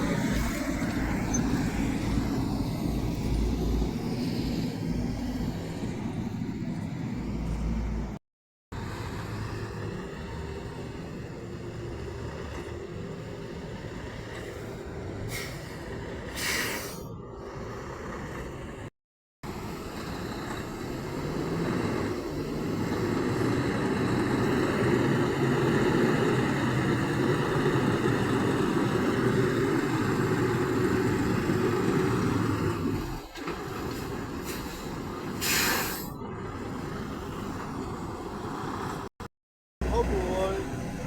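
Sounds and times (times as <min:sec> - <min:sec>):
diesel truck engine rumbling: 0:00.0 - 0:39.2, 0:39.8 - 0:41.0
air brake hiss: 0:15.3 - 0:17.1, 0:34.4 - 0:36.2.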